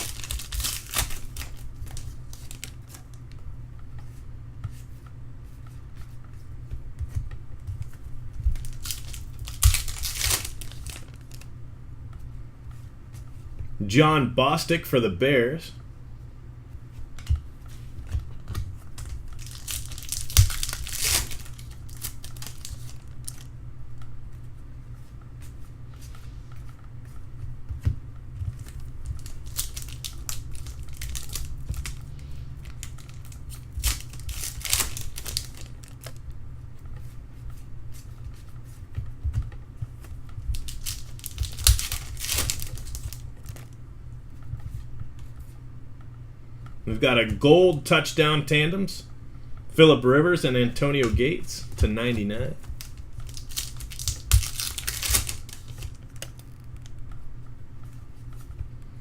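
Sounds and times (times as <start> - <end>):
wrappers tearing and crinkling: 0.0 - 3.2, 8.5 - 11.5, 19.0 - 23.5, 28.6 - 36.2, 40.4 - 43.8, 52.6 - 56.9
steady low hum: 0.0 - 59.0
cards clicking: 51.0 - 56.8.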